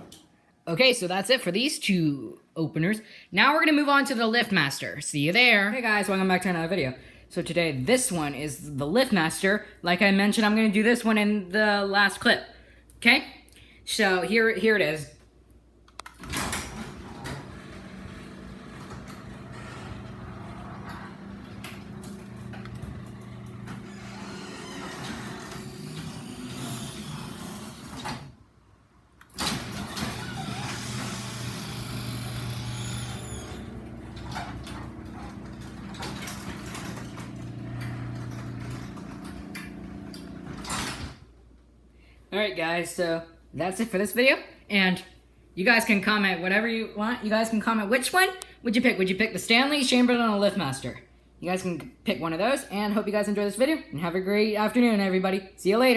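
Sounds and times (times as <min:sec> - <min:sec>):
garage door opener motor hum: 0:16.1 - 0:28.6, 0:29.2 - 0:41.2.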